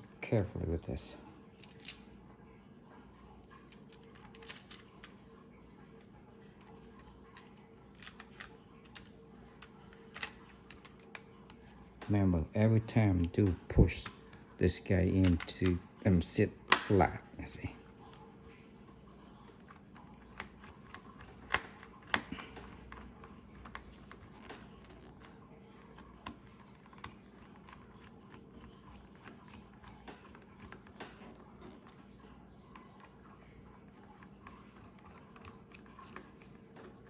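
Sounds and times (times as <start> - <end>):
faint steady hum: 0.0 - 37.0
plastic parts clicking: 20.3 - 25.3.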